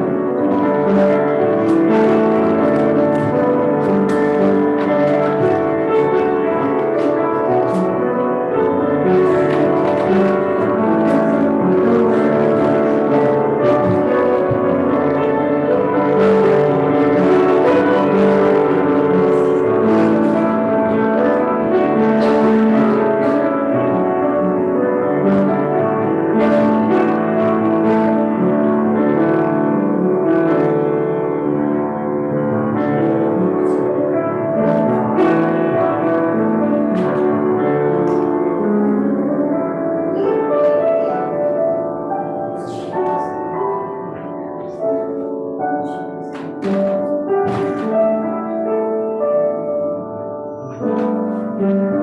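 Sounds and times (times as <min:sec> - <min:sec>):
slow instrumental music: 0:00.0 - 0:52.0.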